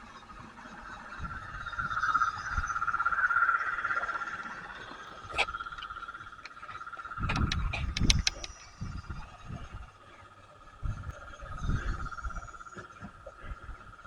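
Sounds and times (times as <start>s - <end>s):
sharp click: 7.2s - 8.7s.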